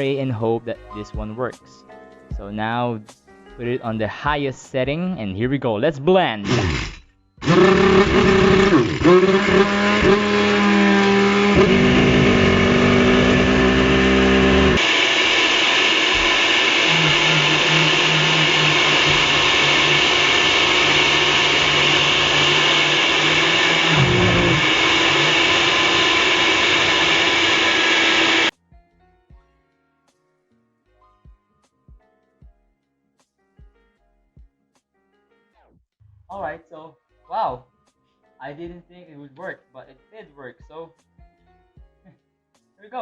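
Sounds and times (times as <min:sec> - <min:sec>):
blender grinding coffee beans: 0:06.4 - 0:28.5.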